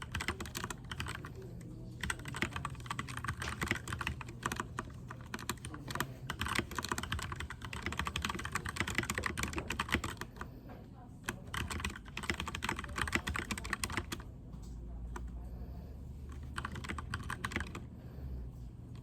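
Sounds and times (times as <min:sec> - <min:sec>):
mechanical keyboard typing: 0:00.0 - 0:10.4, 0:11.3 - 0:14.3, 0:16.3 - 0:17.9.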